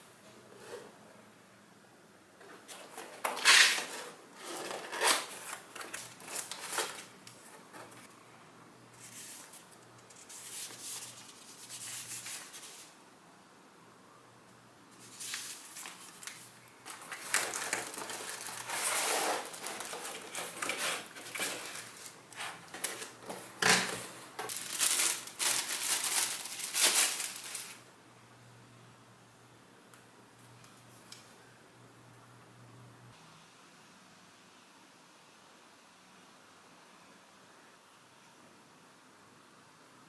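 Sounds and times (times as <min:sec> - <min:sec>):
paper and packaging crinkling: 0:02.5 - 0:08.1, 0:15.0 - 0:27.9.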